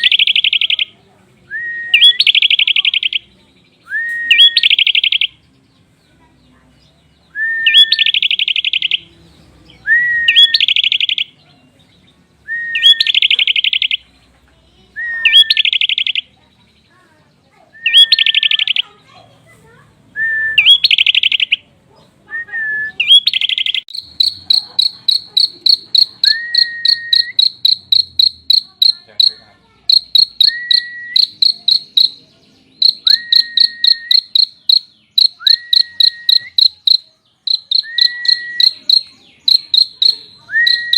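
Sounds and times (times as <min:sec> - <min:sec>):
fast buzzy bird trill: 0:00.0 - 0:00.9, 0:04.3 - 0:05.4, 0:07.7 - 0:09.0, 0:10.1 - 0:11.3, 0:12.8 - 0:14.0, 0:15.2 - 0:16.3, 0:17.8 - 0:18.9, 0:20.6 - 0:21.6, 0:23.0 - 0:40.9
rapid ticking bird trill: 0:00.0 - 0:01.0, 0:01.9 - 0:03.4, 0:04.1 - 0:05.4, 0:07.6 - 0:11.5, 0:12.7 - 0:14.1, 0:15.2 - 0:16.5, 0:17.7 - 0:19.2, 0:20.6 - 0:21.6, 0:23.0 - 0:40.9
bird rising whistle: 0:40.6 - 0:40.9.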